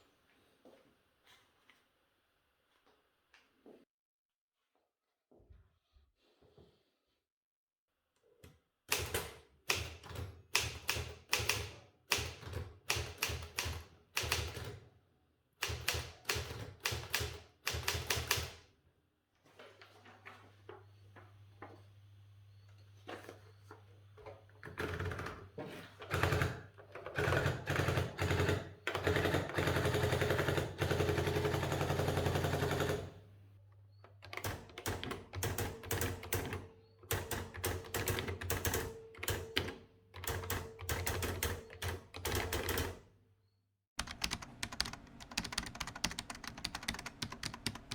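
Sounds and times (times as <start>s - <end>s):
typewriter keys striking: 44.0s - 47.9s.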